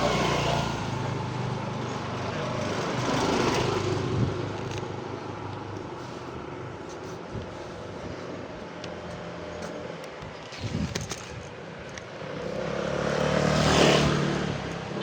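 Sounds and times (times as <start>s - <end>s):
vehicle passing close by: 0.0s - 4.8s, 12.2s - 15.0s
street traffic rumbling: 0.0s - 15.0s.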